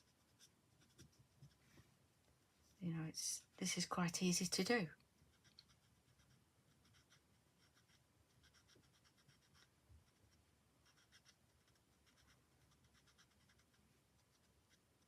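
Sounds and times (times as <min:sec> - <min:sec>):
marker scratching on card: 0:00.0 - 0:01.6, 0:05.3 - 0:14.9.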